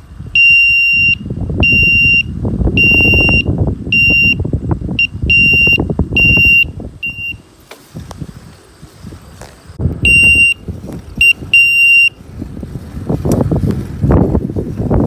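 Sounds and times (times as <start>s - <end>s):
low rumbling noise: 0.0s - 15.0s
electric bike horn beeping: 0.4s - 7.6s, 10.0s - 12.2s.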